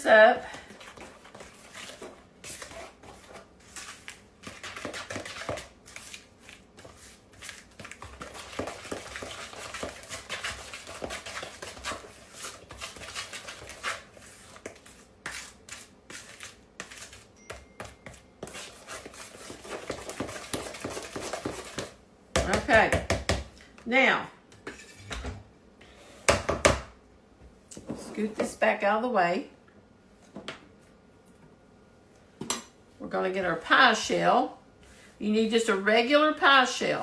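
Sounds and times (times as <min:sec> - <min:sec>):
utensil scraping and clinking bowl: 0:00.5 - 0:21.9, 0:24.6 - 0:25.2.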